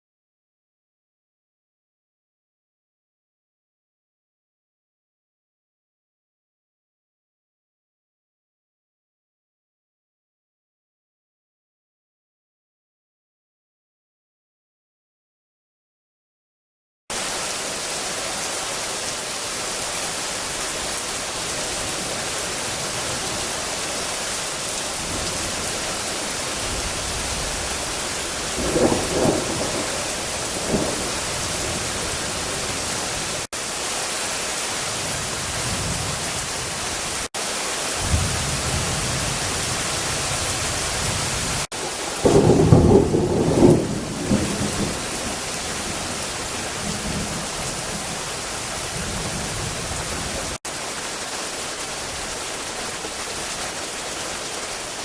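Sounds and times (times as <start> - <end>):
heavy rain pouring: 17.1 - 55.0
thunder rumbling: 24.9 - 33.5, 38.0 - 48.1.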